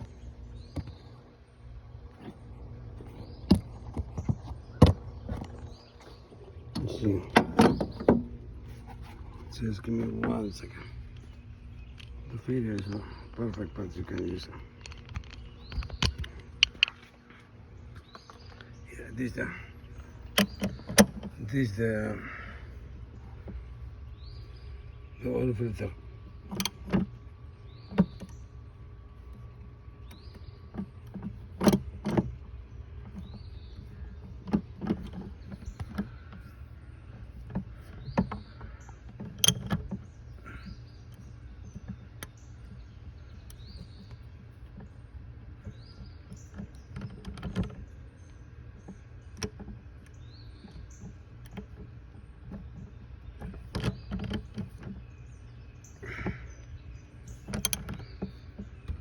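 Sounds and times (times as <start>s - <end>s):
steady low hum: 0.0s - 59.0s
tools and parts clicking: 14.0s - 17.1s, 39.1s - 40.0s, 57.3s - 58.1s.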